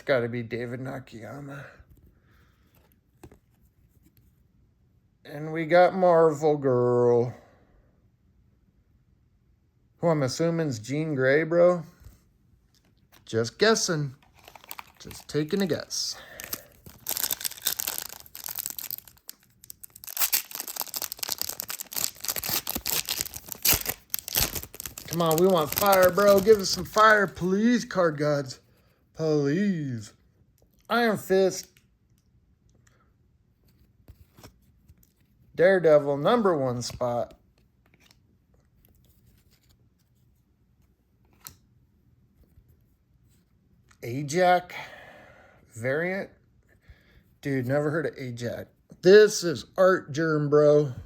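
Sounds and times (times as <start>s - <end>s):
cards being shuffled: 12.8s - 27.4s
foil pack crinkling: 14.2s - 27.4s.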